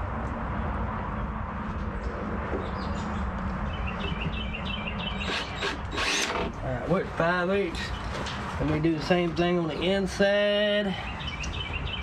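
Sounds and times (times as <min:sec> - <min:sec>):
bird chirping: 0:02.6 - 0:05.9, 0:11.0 - 0:12.0.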